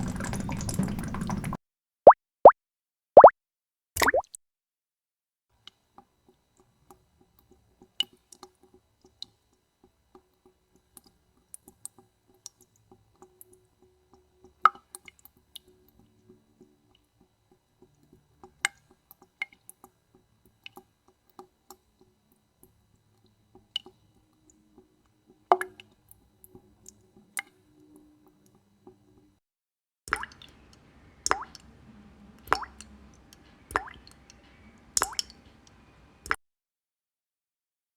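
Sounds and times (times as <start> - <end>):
water drops dripping: 0.0 - 1.6, 4.0 - 4.3, 5.6 - 29.0, 30.1 - 31.7, 32.4 - 35.8.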